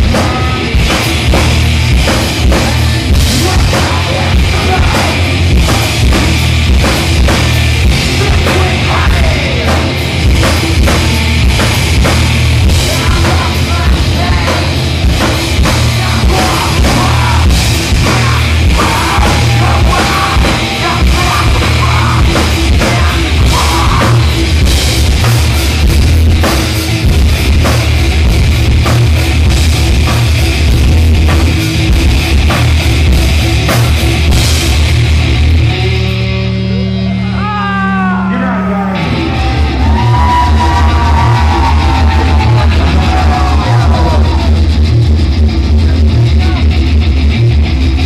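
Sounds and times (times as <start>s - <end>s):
distorted guitars: 0.0s - 48.0s
heavy bass: 0.0s - 48.0s
live heavy rock band: 0.0s - 48.0s
pounding drum kit: 0.0s - 48.0s
person singing: 2.4s - 6.0s, 8.0s - 10.0s, 12.8s - 14.8s, 15.6s - 24.4s, 36.7s - 44.6s.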